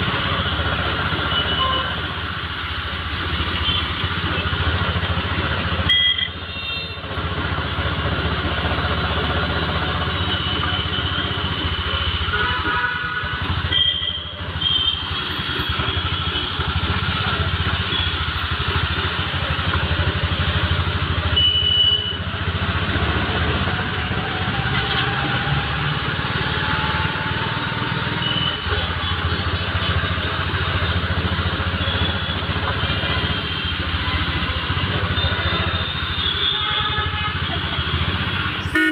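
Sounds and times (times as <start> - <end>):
brief high tones: 38.6 - 38.9.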